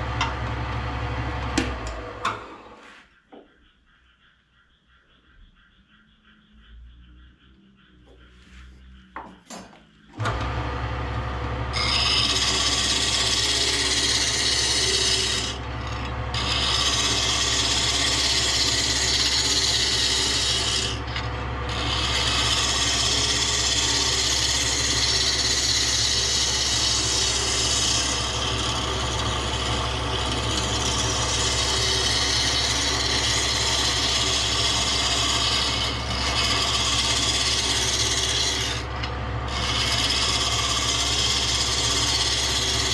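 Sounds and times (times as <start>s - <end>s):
power tool motor hum: 21.8s - 42.9s.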